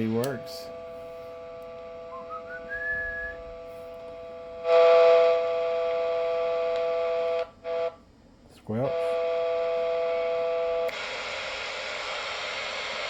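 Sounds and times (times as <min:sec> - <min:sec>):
short rising whistle: 0:02.1 - 0:03.5.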